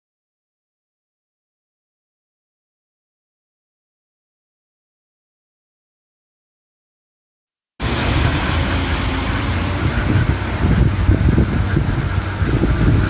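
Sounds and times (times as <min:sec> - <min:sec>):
heavy low rumble: 0:07.8 - 0:13.0
wind buffeting microphone: 0:07.8 - 0:13.0.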